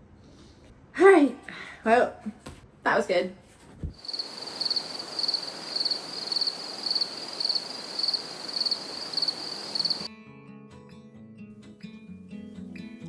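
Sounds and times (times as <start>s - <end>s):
insects chirping: 4.0s - 10.1s
steady hiss: 4.0s - 10.1s.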